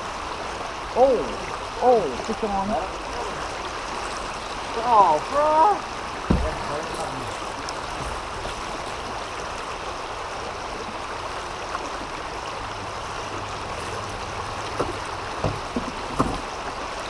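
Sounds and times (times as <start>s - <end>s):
river water rushing: 0.0s - 17.0s
small knocks: 6.2s - 9.0s, 14.6s - 16.6s.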